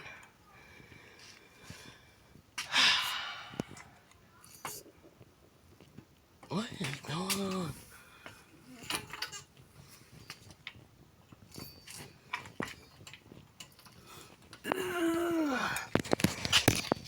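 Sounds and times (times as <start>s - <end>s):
light clicks and small knocks: 3.6s - 14.8s.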